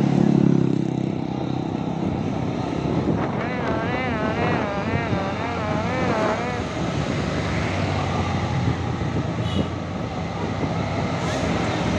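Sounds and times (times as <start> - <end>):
bus musical horn tune: 3.1 - 7.7.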